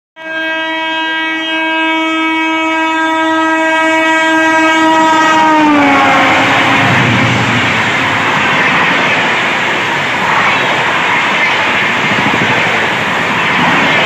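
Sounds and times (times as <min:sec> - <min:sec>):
locomotive horn long note: 0:00.2 - 0:09.6
passing train noise: 0:00.2 - 0:14.0.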